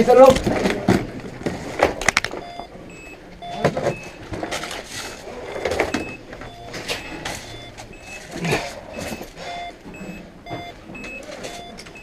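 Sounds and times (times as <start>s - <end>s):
short electronic beeps: 2.4s - 5.1s, 5.9s - 12.0s.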